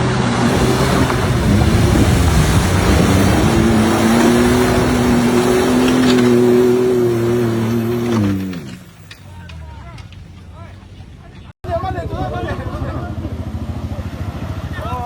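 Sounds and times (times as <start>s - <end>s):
engine revving under load: 0.0s - 10.6s
tyre and terrain noise: 0.0s - 11.5s.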